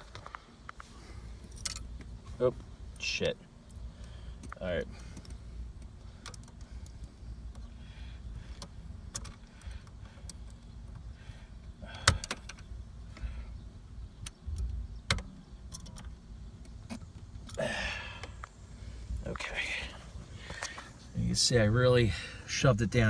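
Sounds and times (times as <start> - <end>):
screwdriver and metal clicks and knocks: 14.2 - 17.6.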